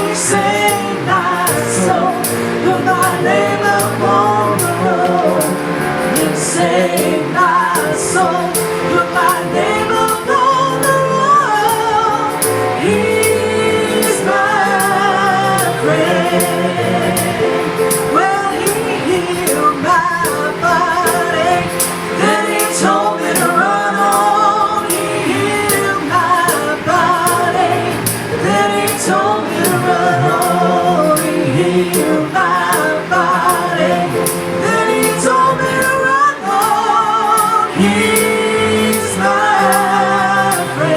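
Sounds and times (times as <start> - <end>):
band playing: 0.0 - 40.9
gospel group singing: 0.0 - 40.9.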